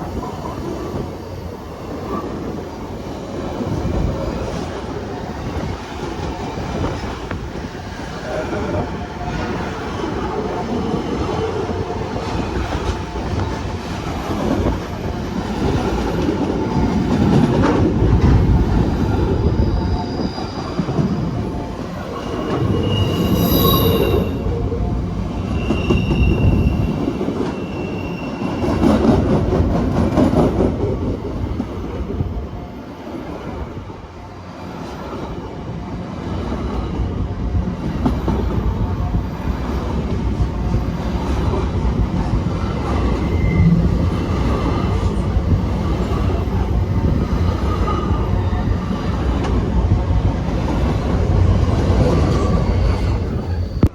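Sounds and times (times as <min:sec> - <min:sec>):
train wheels rumbling on rail: 0:00.0 - 0:53.9
high-pitched wheel squeal: 0:22.2 - 0:24.5, 0:25.4 - 0:29.0, 0:43.2 - 0:44.0.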